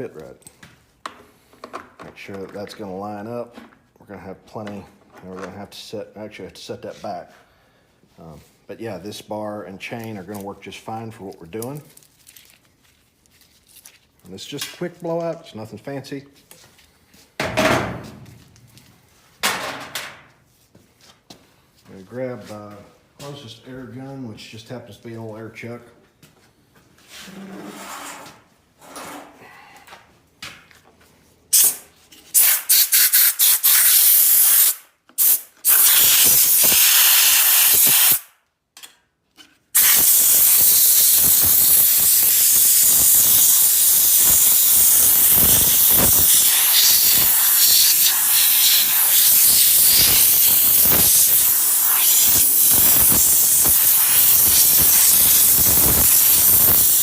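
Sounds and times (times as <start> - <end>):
compressed air hissing: 31.5 - 38.3, 39.8 - 57.0.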